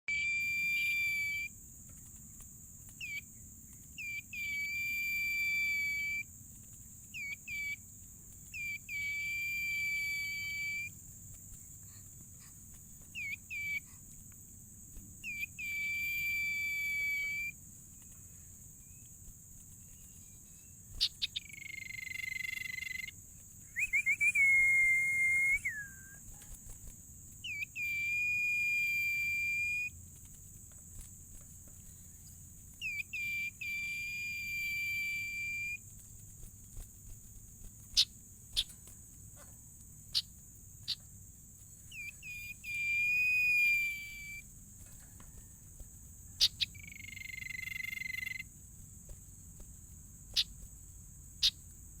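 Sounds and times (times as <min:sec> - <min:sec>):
bird whistling calls: 0:00.1 - 0:01.5, 0:03.0 - 0:03.3, 0:04.0 - 0:06.3, 0:07.2 - 0:07.8, 0:08.5 - 0:11.0, 0:13.2 - 0:13.9, 0:15.2 - 0:17.6, 0:19.9 - 0:26.3, 0:27.4 - 0:29.9, 0:32.8 - 0:35.8, 0:41.9 - 0:44.4, 0:46.4 - 0:48.5
high-pitched hiss: 0:00.1 - 0:52.0.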